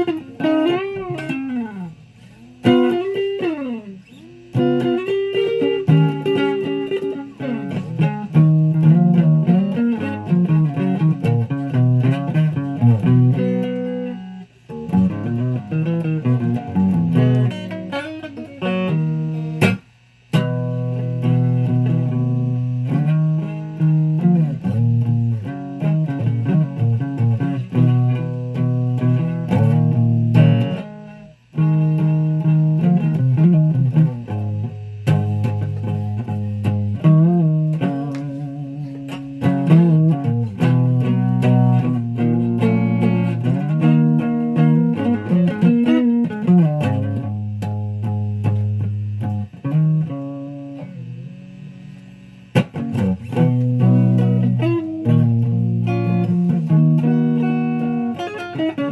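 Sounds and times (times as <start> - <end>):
guitar plucking notes: 0.0 - 58.9.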